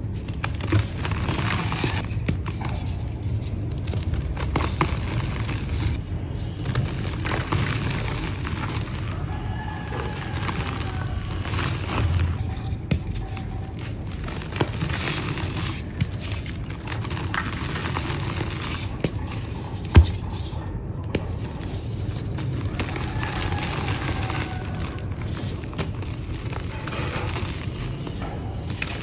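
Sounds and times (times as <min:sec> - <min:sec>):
dry dirt crumbling: 0:03.9 - 0:21.4
sharp knock: 0:20.0 - 0:20.3.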